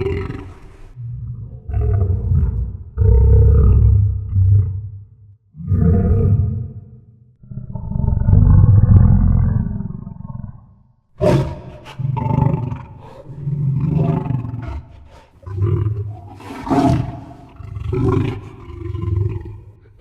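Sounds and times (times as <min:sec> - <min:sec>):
monster growling: 0:11.2 - 0:20.0
hissing breath: 0:13.0 - 0:13.5, 0:14.6 - 0:15.6.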